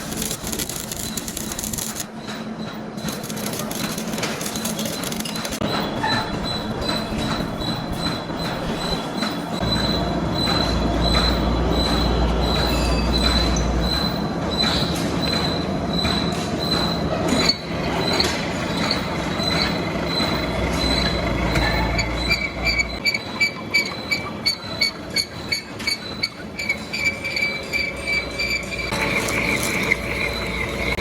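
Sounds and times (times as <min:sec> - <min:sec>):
high-pitched tool squeal: 0:00.0 - 0:02.1, 0:17.4 - 0:31.0
metal lathe cutting steel: 0:18.8 - 0:31.0.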